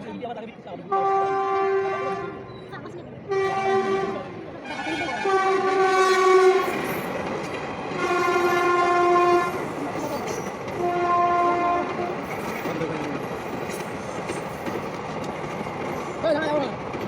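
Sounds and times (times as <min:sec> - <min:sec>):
train running noise: 0:00.0 - 0:17.0
train horn blasts: 0:00.9 - 0:02.5, 0:03.3 - 0:06.9, 0:08.0 - 0:09.7, 0:10.8 - 0:12.3.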